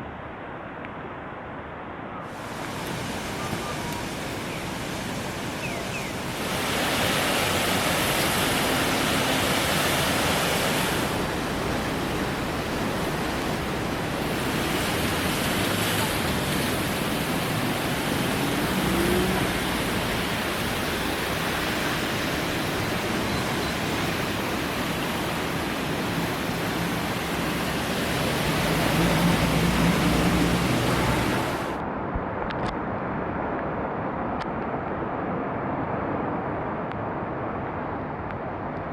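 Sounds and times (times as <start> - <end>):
flooded river rushing: 2.3 - 31.8.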